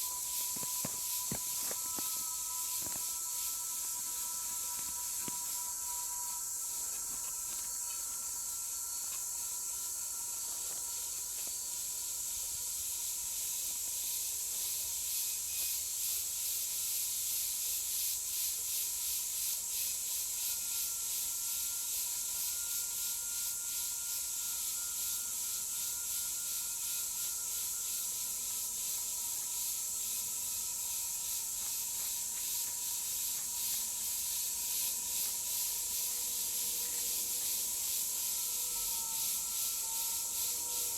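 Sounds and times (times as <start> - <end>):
tool scraping in soil: 0.0 - 3.6
faint steady tone: 0.0 - 40.9
steady high hiss: 0.0 - 40.9.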